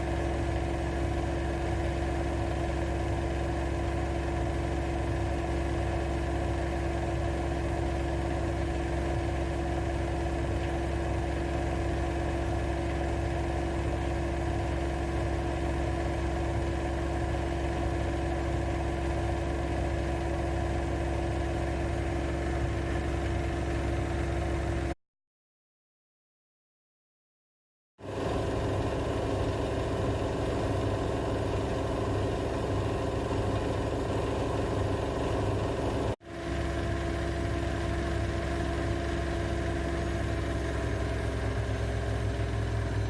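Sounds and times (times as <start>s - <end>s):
washing machine humming: 28.0s - 43.0s.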